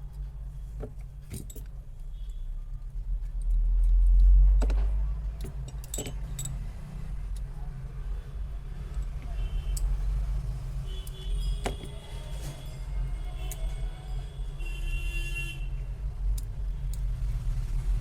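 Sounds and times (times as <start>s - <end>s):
faint traffic: 0.0s - 18.0s
metallic clicks of small tools: 5.4s - 6.7s, 16.2s - 17.2s.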